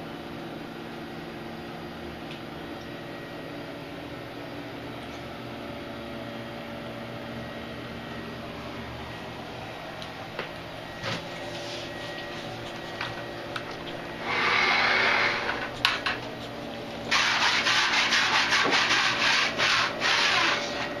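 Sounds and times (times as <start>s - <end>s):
flooring sheet scraping on floor: 17.1s - 20.9s.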